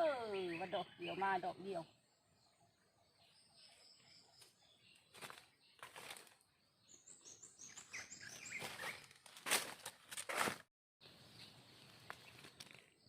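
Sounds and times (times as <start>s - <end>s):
small bird chirping: 0.0s - 9.2s
dry leaves rustling and crunching: 5.1s - 6.4s, 8.3s - 10.6s.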